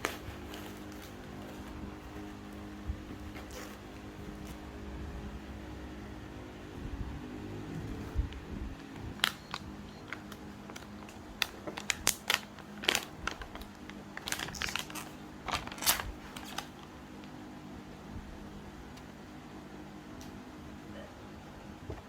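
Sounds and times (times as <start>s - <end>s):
packaging crinkling: 0.0s - 4.7s, 8.2s - 17.3s.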